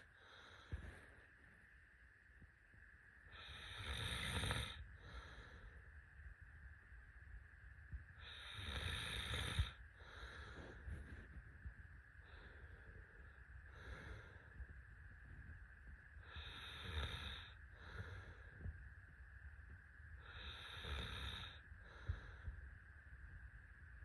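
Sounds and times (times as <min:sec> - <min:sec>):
person snoring faintly: 0:03.3 - 0:05.7, 0:08.2 - 0:11.3, 0:16.2 - 0:18.7, 0:20.2 - 0:22.5.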